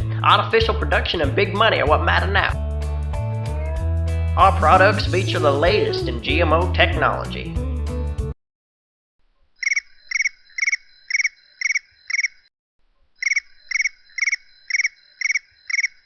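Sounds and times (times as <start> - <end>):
trilled animal chirps: 9.6 - 12.5, 13.2 - 16.0.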